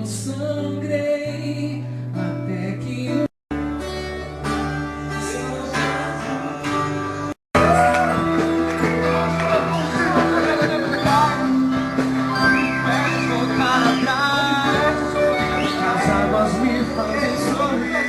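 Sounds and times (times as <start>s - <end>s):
worship song with guitar: 0.0s - 18.0s
person singing: 5.0s - 11.8s, 12.4s - 18.0s.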